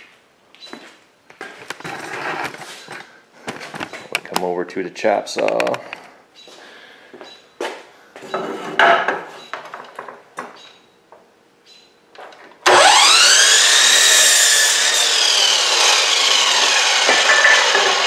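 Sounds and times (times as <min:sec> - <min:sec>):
chop saw cutting wood: 0:12.6 - 0:18.0.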